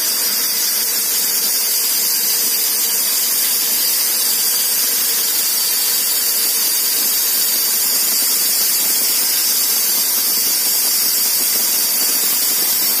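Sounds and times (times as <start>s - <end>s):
loud steady hiss: 0.0s - 13.0s.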